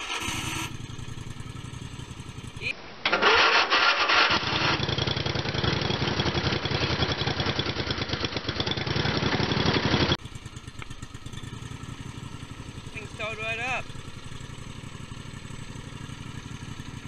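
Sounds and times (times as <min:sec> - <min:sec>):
lawn tractor engine running: 0:00.0 - 0:17.0.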